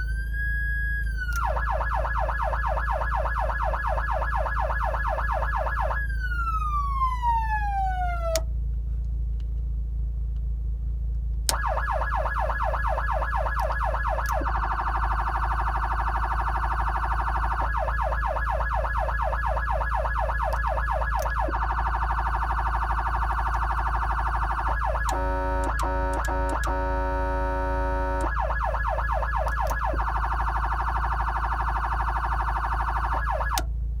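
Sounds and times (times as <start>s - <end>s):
electronic siren yelp and warble: 0.0s - 8.5s, 11.5s - 33.7s
low electrical hum: 0.0s - 34.0s
buzzing horn blasts: 23.5s - 29.8s.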